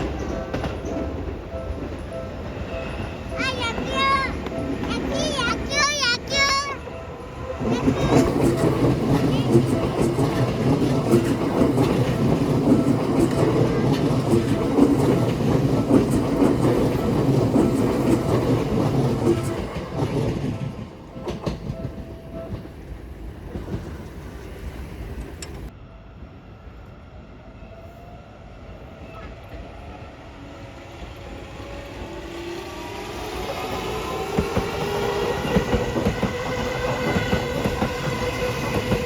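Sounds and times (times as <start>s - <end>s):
electric train passing: 0.0s - 39.0s
wheels clattering over rail joints: 7.6s - 22.8s, 33.5s - 39.0s.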